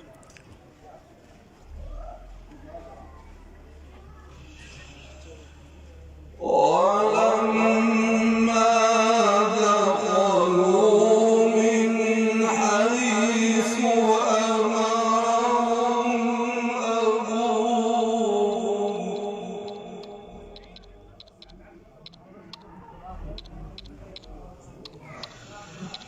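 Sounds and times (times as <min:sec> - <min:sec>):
man chanting melodically: 0:06.4 - 0:26.0.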